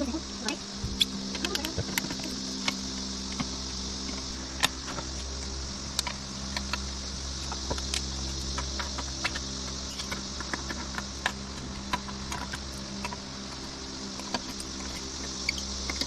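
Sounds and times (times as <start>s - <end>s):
steady hum and hiss: 0.0s - 16.0s.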